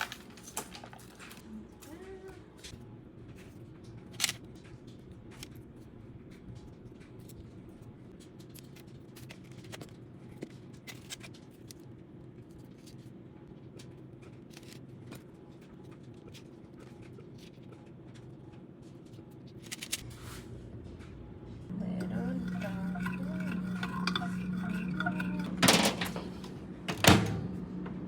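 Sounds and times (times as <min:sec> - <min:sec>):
microwave oven humming: 0:20.6 - 0:28.0.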